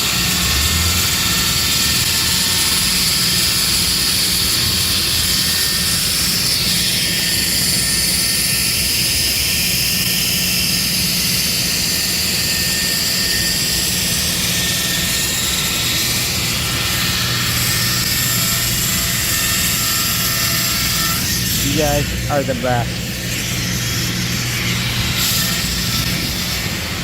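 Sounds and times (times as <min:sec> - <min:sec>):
drilling rig droning and whining: 0:11.4 - 0:27.0.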